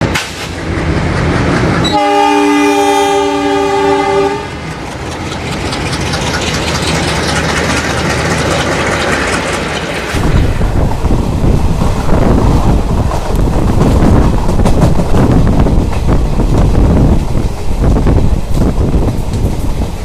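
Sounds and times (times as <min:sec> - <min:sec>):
train rumbling and rattling: 0:00.0 - 0:20.0
locomotive horn chord: 0:01.8 - 0:04.5.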